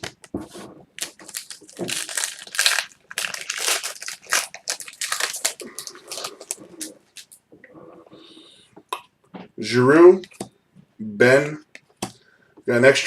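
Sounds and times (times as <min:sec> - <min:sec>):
card pack wrapper crinkling: 0:01.0 - 0:07.4.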